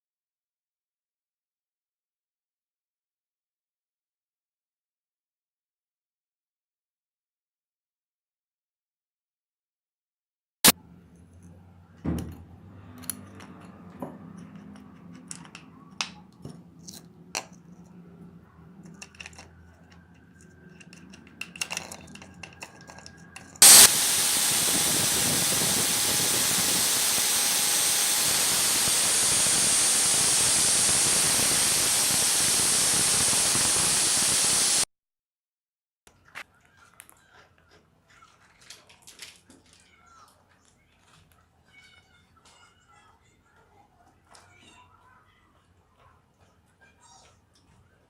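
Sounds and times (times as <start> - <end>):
aerosol spray can hissing: 23.6 - 34.8.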